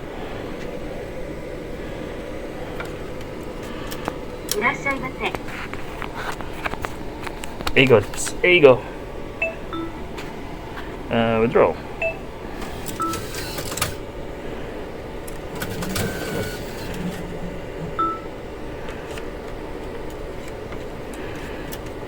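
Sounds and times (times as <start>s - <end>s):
steady hum: 0.0s - 22.0s
atm mechanism clicking and running: 2.8s - 8.3s, 9.4s - 10.4s, 12.0s - 14.4s, 15.1s - 22.0s
atm beeps: 9.4s - 10.1s, 12.0s - 14.0s, 15.5s - 17.2s, 17.9s - 18.4s.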